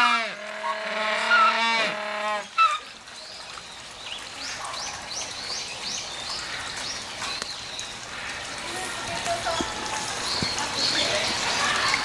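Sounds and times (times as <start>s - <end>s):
penguins honking: 0.0s - 2.8s.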